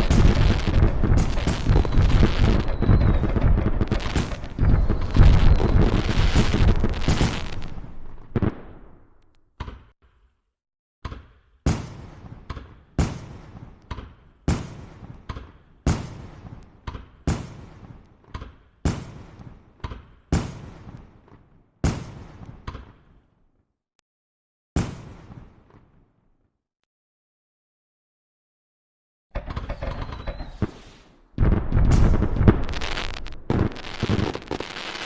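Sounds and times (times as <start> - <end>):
firework bangs with crackling: 0.0 - 8.9, 20.4 - 21.0, 21.8 - 22.5, 24.8 - 25.9, 29.4 - 35.0
small firework pops: 0.0 - 9.3, 29.4 - 35.0.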